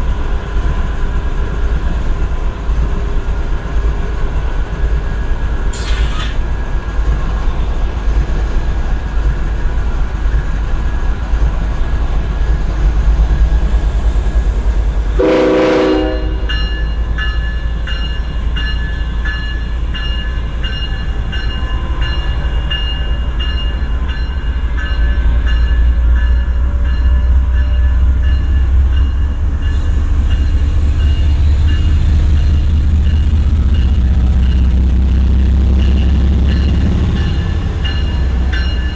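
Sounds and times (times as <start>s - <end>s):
locomotive engine rumbling: 0.0s - 38.9s
air horn blast: 15.2s - 16.5s.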